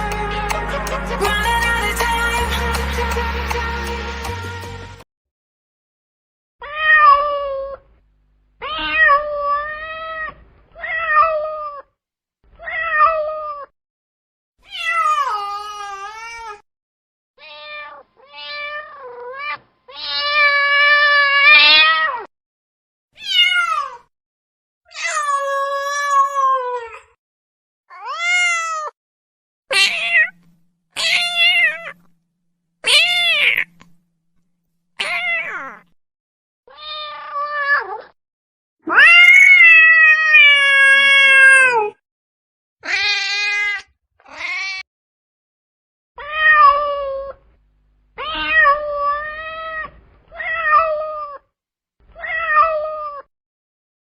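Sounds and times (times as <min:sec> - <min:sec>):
cat meowing: 0:08.6 - 0:11.9, 0:12.6 - 0:13.7, 0:14.6 - 0:16.6, 0:17.4 - 0:22.3, 0:23.2 - 0:24.1, 0:24.9 - 0:27.2, 0:27.9 - 0:29.0, 0:29.7 - 0:32.1, 0:32.8 - 0:34.0, 0:35.0 - 0:36.0, 0:36.7 - 0:38.2, 0:38.8 - 0:42.0, 0:42.8 - 0:44.8, 0:46.2 - 0:47.4, 0:48.2 - 0:51.5, 0:52.1 - 0:53.3.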